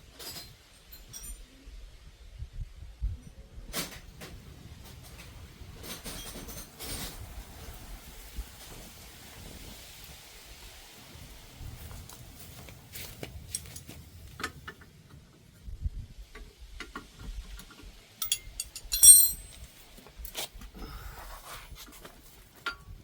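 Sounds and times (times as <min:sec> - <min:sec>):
metal tools clinking: 0:00.2 - 0:01.5, 0:18.2 - 0:19.8.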